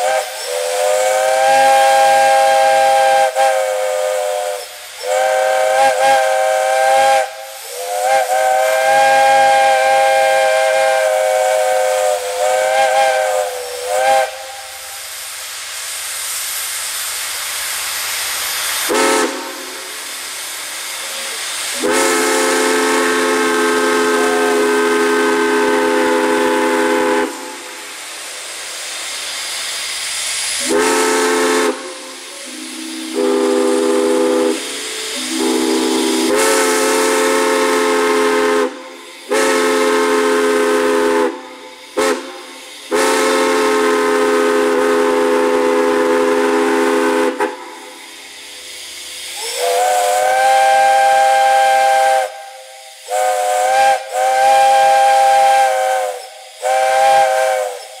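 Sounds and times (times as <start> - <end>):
steam chime whistle blasts: 0.0 - 15.3, 18.4 - 28.0, 29.0 - 58.0
steam hissing: 0.0 - 58.0.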